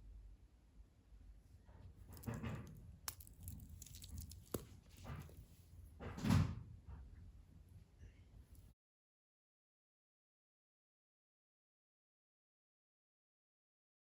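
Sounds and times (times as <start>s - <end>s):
rustling clattering handling noise: 2.0s - 6.0s.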